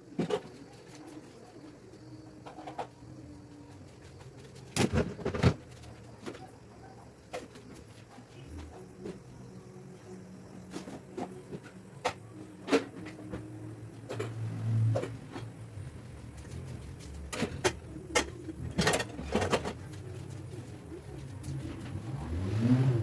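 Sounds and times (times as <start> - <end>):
objects clicking and knocking: 16.2 - 22.0.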